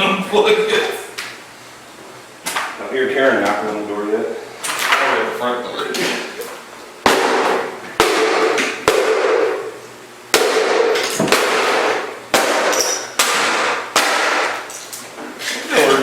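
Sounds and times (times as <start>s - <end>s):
heavy blows smashing plastic: 7.1s - 9.5s, 10.4s - 14.7s.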